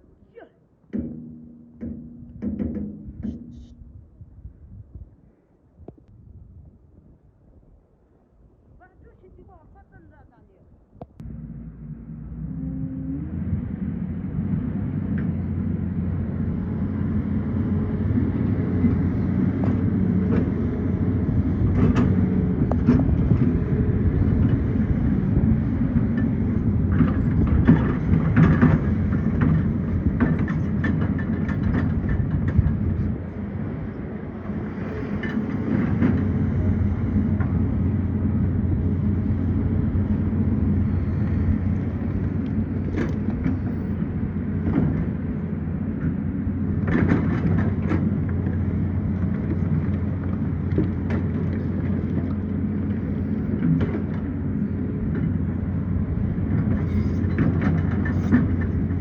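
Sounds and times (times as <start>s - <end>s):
sharp knocks and scrapes: 0.9s - 3.9s, 26.9s - 33.1s, 56.6s - 59.0s
excavator diesel engine running: 11.2s - 59.0s.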